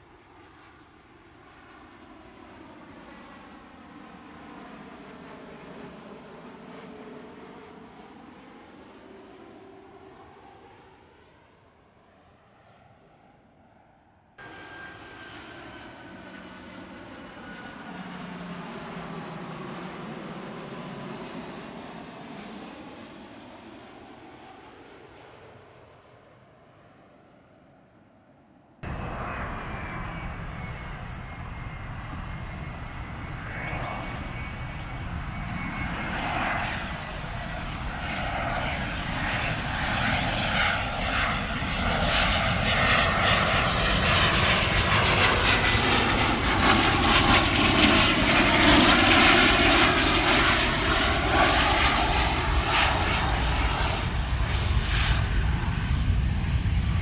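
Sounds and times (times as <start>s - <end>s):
aircraft noise: 14.4s - 21.9s, 28.8s - 57.0s
jet engine rush with whine: 14.4s - 24.4s, 28.8s - 57.0s.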